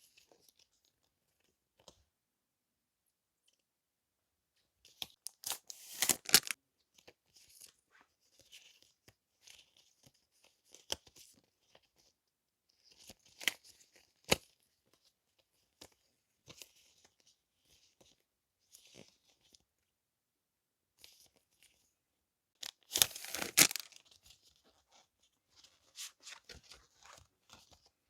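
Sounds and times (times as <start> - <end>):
packaging being torn open: 5.4 - 6.6, 22.7 - 24.0
packaging rustling: 5.8 - 6.6, 22.6 - 24.7.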